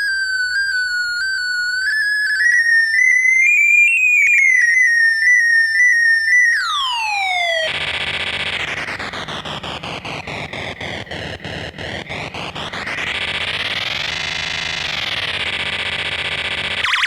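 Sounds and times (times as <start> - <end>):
raygun synth tone: 7.2 - 17.0
harsh noise burst: 7.7 - 17.0.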